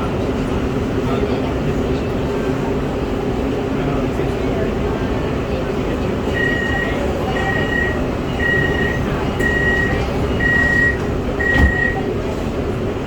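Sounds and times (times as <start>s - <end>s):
train rumble: 0.0s - 13.0s
electronic warning beeps: 6.3s - 12.1s.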